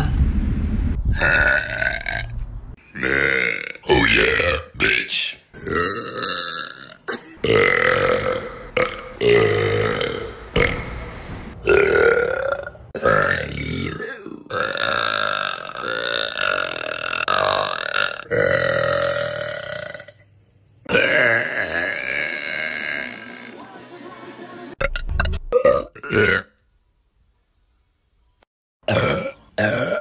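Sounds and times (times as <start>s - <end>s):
person burping: 1.2s - 2.2s, 2.9s - 4.6s, 5.6s - 10.8s, 11.7s - 20.2s, 20.9s - 23.6s, 24.8s - 26.6s, 28.8s - 30.0s.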